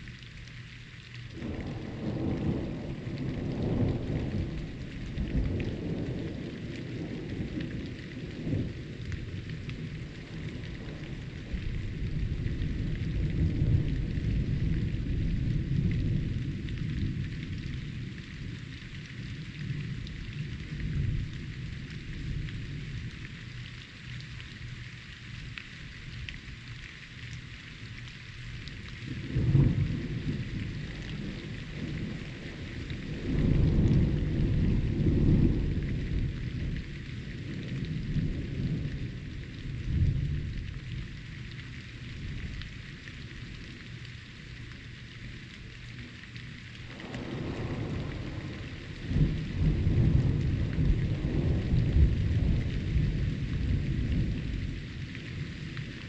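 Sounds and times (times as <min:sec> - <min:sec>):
steady rain hiss: 0:00.0 - 0:56.0
thunder rumbling and cracking: 0:01.3 - 0:18.6, 0:29.0 - 0:41.2, 0:46.8 - 0:56.0.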